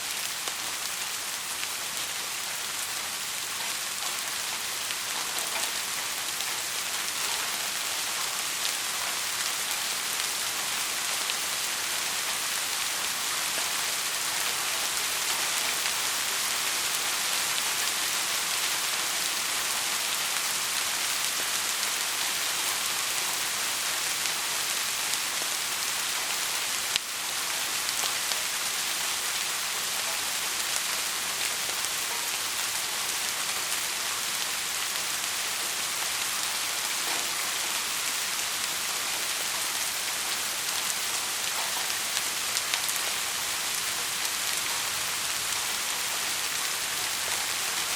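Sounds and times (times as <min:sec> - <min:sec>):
heavy rain falling: 0:00.0 - 0:47.9.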